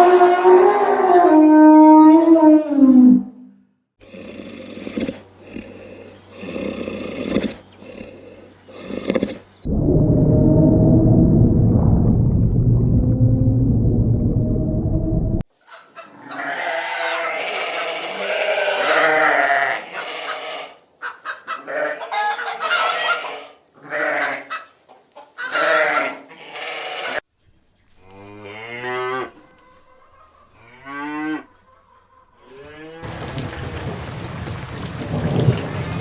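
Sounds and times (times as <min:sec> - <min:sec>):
chickens clucking and crowing: 0:15.6 - 0:17.9, 0:21.0 - 0:23.5, 0:24.4 - 0:25.7, 0:29.4 - 0:32.8
wavering livestock calls: 0:15.8 - 0:24.7, 0:25.4 - 0:27.2
steady rain-like noise: 0:33.0 - 0:36.0.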